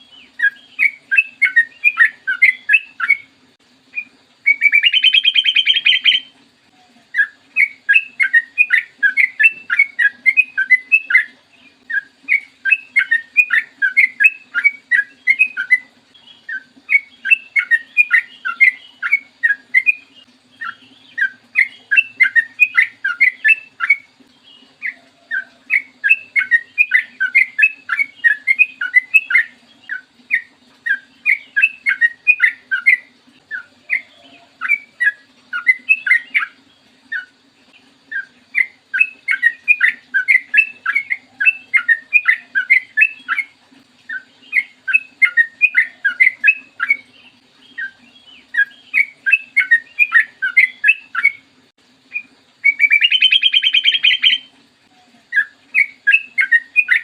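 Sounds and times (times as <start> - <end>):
bird singing bubbly notes: 0.0 - 57.0
harsh buzzy bird call: 3.9 - 11.3, 52.1 - 54.5.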